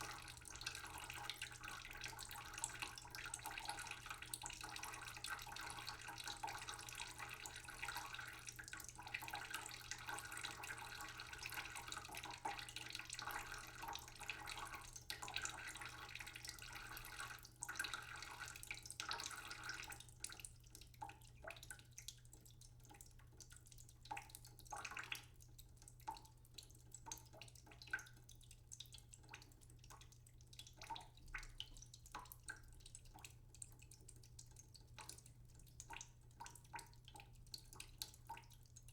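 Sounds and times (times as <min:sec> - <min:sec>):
water running from a tap: 0:00.0 - 0:23.4
water drips: 0:00.0 - 0:38.9.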